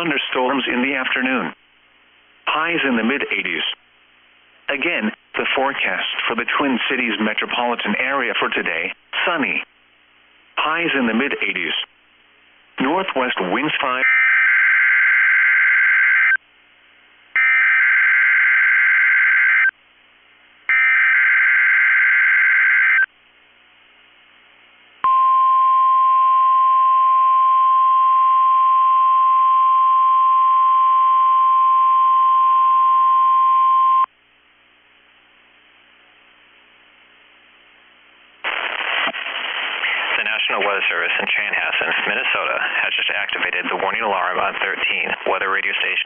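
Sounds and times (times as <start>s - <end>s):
steady warning alarm tone: 17.4s - 19.7s, 20.7s - 23.1s.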